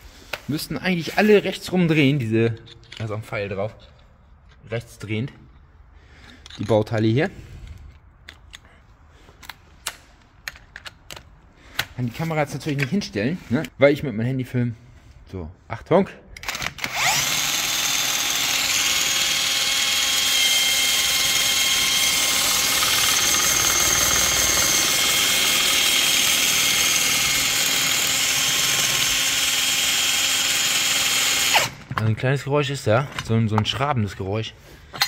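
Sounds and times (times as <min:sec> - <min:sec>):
cordless drill whining: 0:16.4 - 0:31.9.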